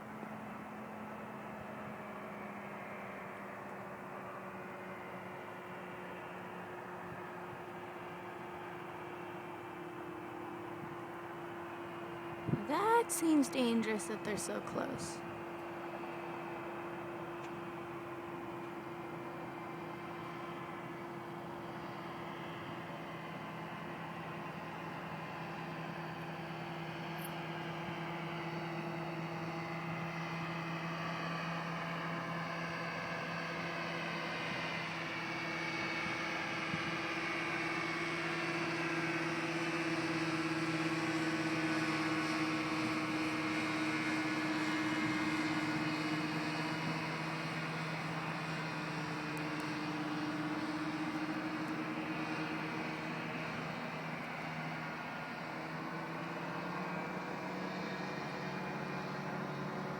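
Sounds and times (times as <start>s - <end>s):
ultralight aircraft engine droning: 0.0s - 59.9s.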